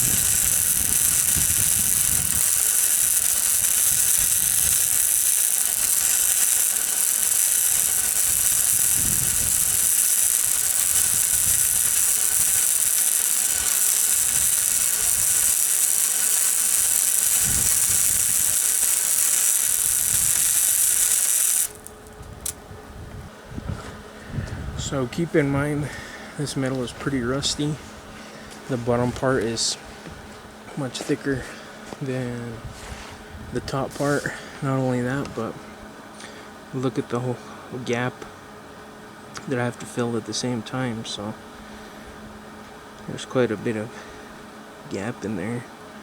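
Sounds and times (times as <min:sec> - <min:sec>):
welding arc crackling and sizzling: 0:00.0 - 0:22.6, 0:33.6 - 0:35.4.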